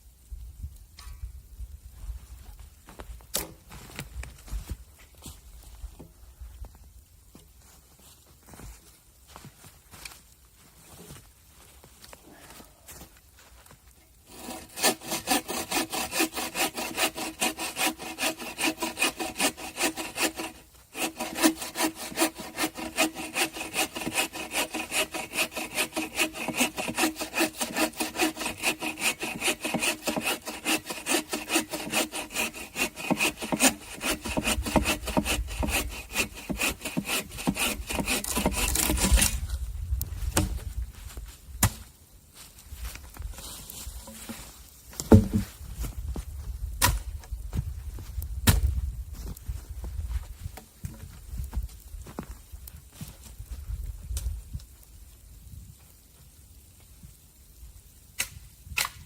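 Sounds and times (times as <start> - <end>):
hand saw cutting wood: 14.2 - 39.4.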